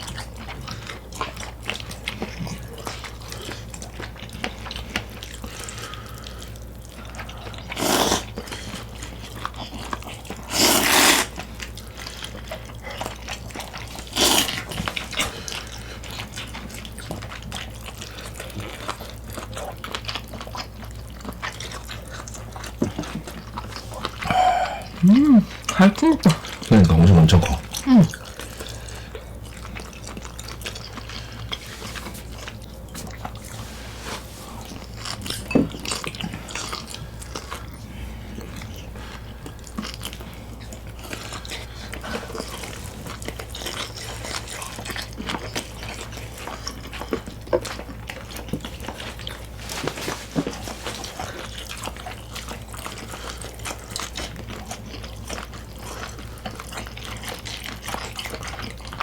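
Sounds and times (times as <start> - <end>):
people chewing food: 0.0 - 59.0
wet mouth sounds: 7.7 - 8.3, 10.5 - 11.3, 14.0 - 15.4, 23.6 - 28.3
steady low hum: 23.8 - 28.2.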